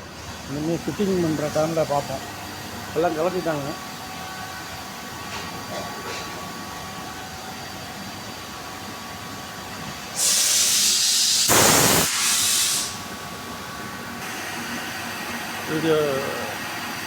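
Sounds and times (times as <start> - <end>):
workshop background noise: 0.0 - 7.4, 9.8 - 17.0
compressed air hissing: 10.1 - 13.2.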